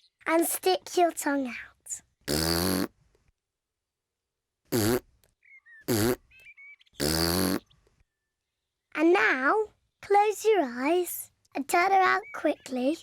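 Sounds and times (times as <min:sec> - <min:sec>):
cartoon piglet hiccuping: 0:07.0 - 0:07.6.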